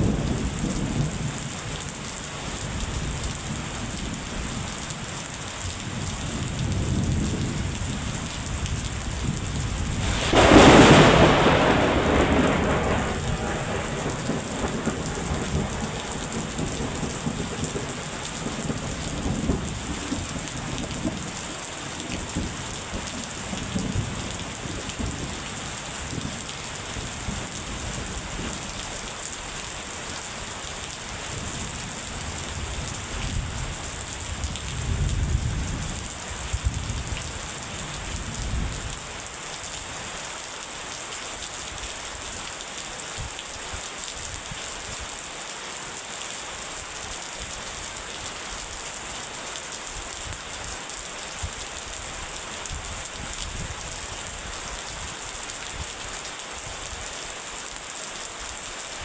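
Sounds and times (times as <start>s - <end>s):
steady rain: 0.0s - 59.0s
rolling thunder: 6.3s - 25.5s, 31.2s - 37.1s.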